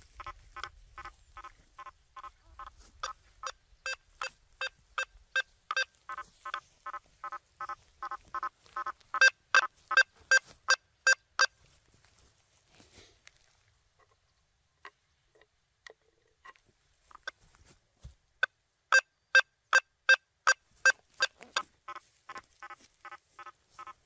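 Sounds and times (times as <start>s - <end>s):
metal detector beeping: 1.8s - 11.6s, 18.9s - 22.0s.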